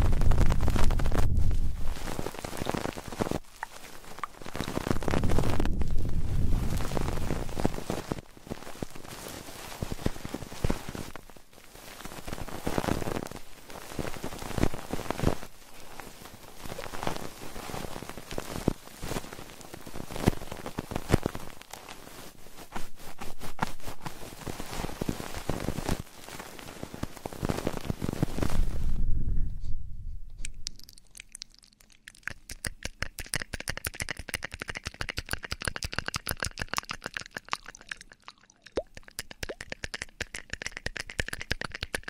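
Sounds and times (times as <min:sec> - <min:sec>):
crackling and scratchy rustling: 0:00.0 - 0:42.0
quick clicks: 0:31.9 - 0:42.0.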